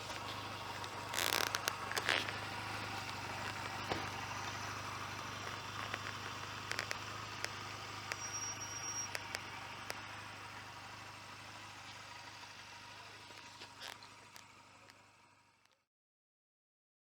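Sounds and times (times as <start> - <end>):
jacket fabric rustling on microphone: 0.0 - 2.4
muffled motorcycle engine humming: 0.0 - 15.8.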